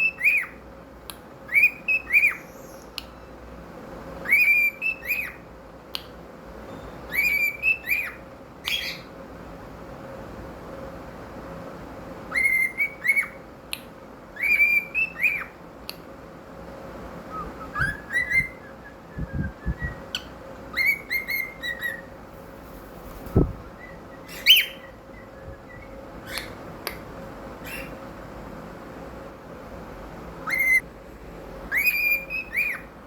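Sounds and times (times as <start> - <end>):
cockatiel whistling: 0.0 - 0.6, 1.5 - 2.8, 4.2 - 5.4, 6.8 - 9.1, 12.3 - 13.4, 14.4 - 15.6, 17.3 - 22.1, 23.8 - 26.6, 30.4 - 30.8, 31.7 - 32.9.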